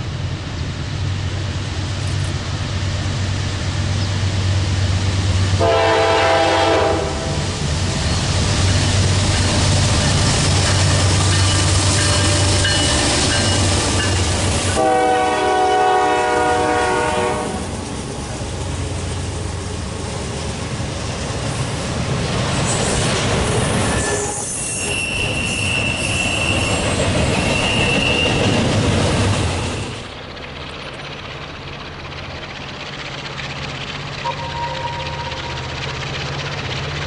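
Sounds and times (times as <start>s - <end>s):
rumble of passing train: 0.0s - 37.0s
train air horn blast: 5.6s - 7.5s, 14.7s - 17.6s, 34.2s - 35.5s
high wheel squeal: 10.0s - 14.2s, 22.6s - 28.8s, 34.2s - 35.8s.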